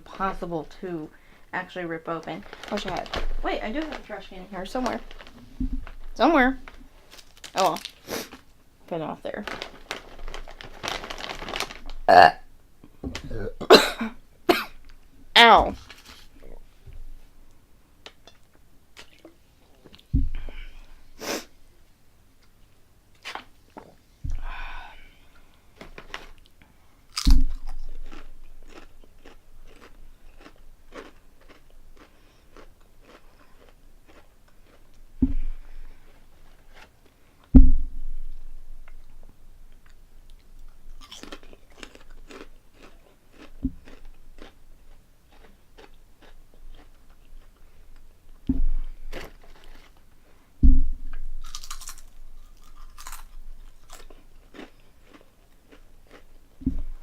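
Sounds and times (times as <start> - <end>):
low thumps: 5.2 - 6.2, 20.1 - 20.5, 35.2 - 35.7, 37.5 - 38.9, 48.5 - 49.0, 50.6 - 51.4
chewing crunchy chips: 6.7 - 8.5, 9.5 - 12.0, 27.1 - 35.7, 38.9 - 48.1, 48.9 - 50.1, 51.4 - 57.0.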